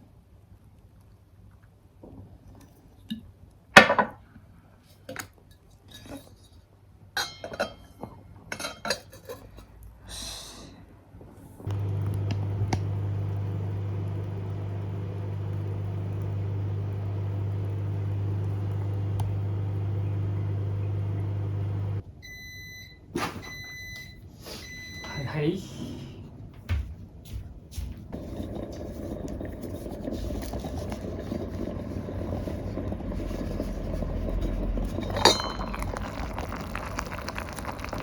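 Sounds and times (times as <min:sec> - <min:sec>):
dishes and utensils clinking: 0:07.2 - 0:09.5, 0:35.0 - 0:36.2
microwave oven humming: 0:11.7 - 0:22.8, 0:27.8 - 0:38.0.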